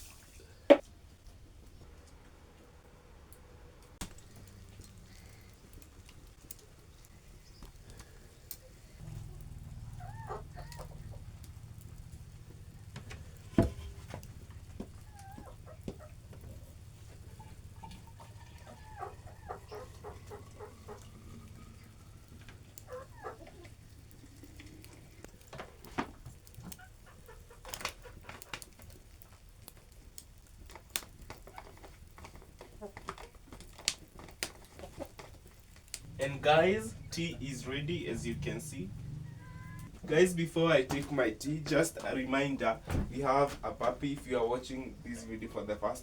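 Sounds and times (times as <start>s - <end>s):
chickens clucking: 7.4s - 25.0s, 26.6s - 28.7s, 36.0s - 39.9s
low steady rumble: 8.8s - 15.1s, 35.9s - 45.9s.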